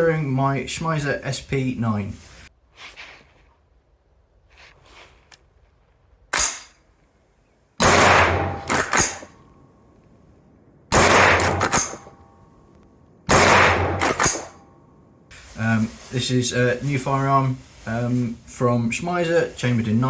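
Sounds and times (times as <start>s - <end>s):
rifle action clacking: 6.3s - 6.8s, 7.9s - 9.3s, 11.0s - 12.1s, 13.3s - 14.6s
rifle shots: 6.3s - 6.8s, 7.8s - 9.4s, 10.9s - 12.2s, 13.3s - 14.6s.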